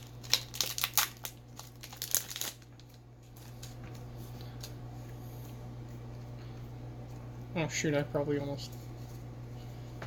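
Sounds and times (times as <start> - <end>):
foil wrapper crinkling and tearing: 0.0 - 4.0.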